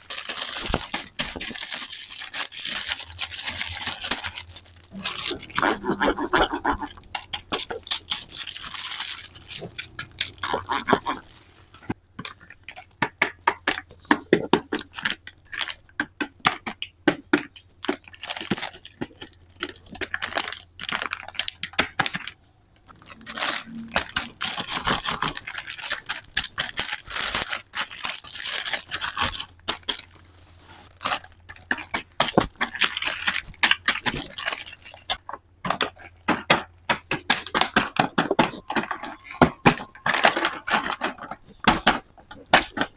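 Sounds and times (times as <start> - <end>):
toy parts clicking: 0.0 - 5.8, 6.7 - 12.0, 18.1 - 30.2
packaging rustling and tearing: 0.0 - 12.0, 18.1 - 35.2.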